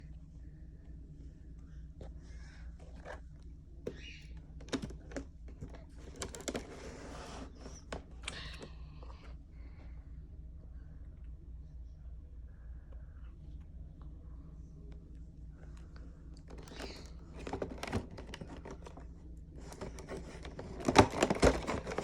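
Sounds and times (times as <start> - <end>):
steady low hum: 0.0 - 22.0
cardboard scraping rustle: 6.2 - 7.9.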